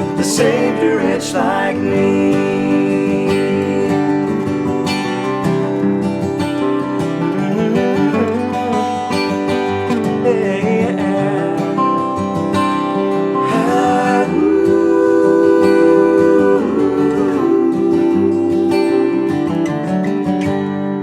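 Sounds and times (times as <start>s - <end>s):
gospel singing held notes: 0.0s - 4.6s, 13.4s - 20.0s
acoustic guitar strumming: 0.0s - 21.0s.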